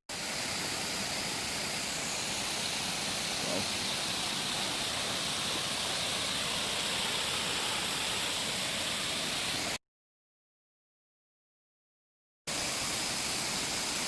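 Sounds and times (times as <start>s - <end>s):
waterfall rushing: 0.1s - 9.8s, 12.5s - 14.0s.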